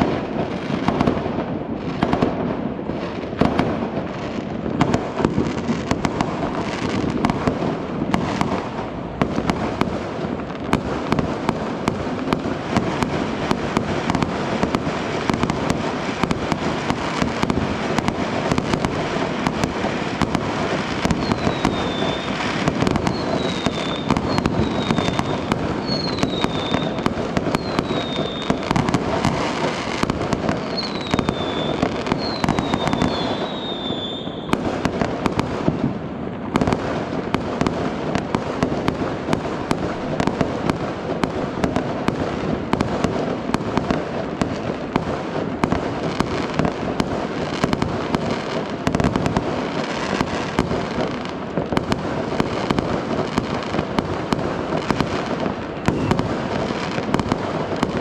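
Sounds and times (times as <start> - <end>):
fireworks banging and crackling: 0.0 - 58.0
falling firework whistles: 20.2 - 35.0, 55.7 - 56.9.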